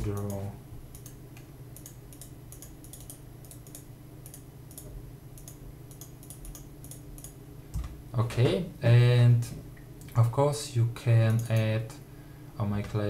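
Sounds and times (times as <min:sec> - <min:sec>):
computer input clicks: 0:00.0 - 0:01.2, 0:01.8 - 0:07.4
low electrical hum: 0:00.0 - 0:13.0.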